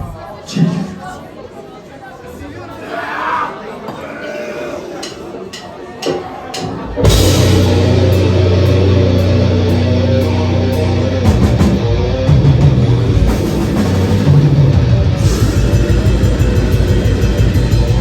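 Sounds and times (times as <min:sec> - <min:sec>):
death metal band playing: 0:07.0 - 0:18.0.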